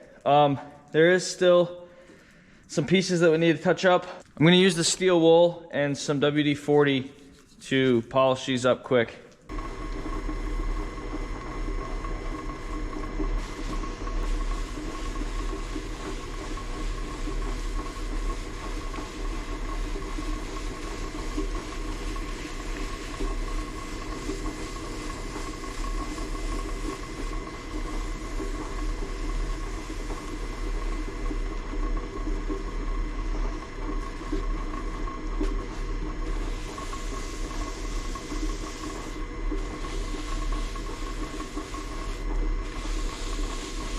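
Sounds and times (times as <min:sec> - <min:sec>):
electric motor humming: 0:09.5 - 0:43.9
steel wool scratching on pulleys: 0:12.1 - 0:31.6, 0:35.6 - 0:43.9.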